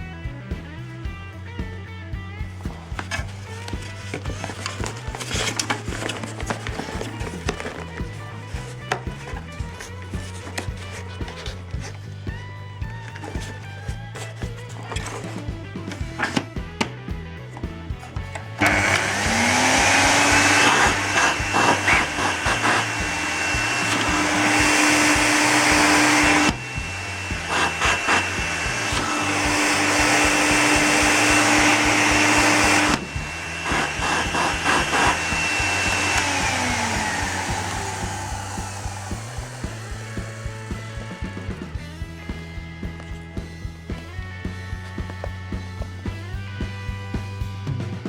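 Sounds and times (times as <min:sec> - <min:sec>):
background music: 0:00.0 - 0:48.0
vacuum cleaner motor whining: 0:18.6 - 0:41.6.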